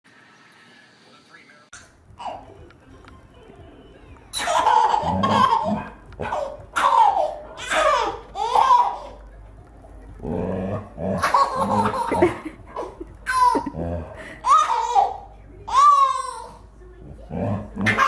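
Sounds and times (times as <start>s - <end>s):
baby laughing: 2.1s - 2.7s, 4.3s - 9.2s, 11.2s - 16.6s, 17.7s - 18.0s.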